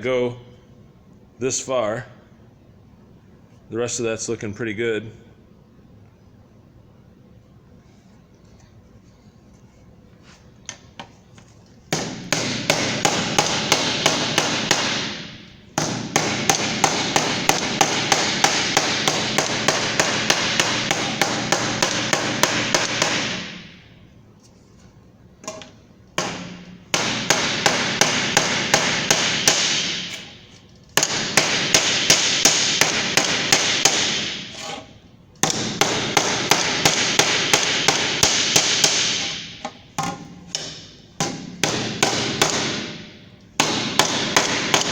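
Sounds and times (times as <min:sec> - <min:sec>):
hammer striking sheet metal: 0:11.9 - 0:23.8, 0:26.2 - 0:30.4, 0:31.0 - 0:44.9.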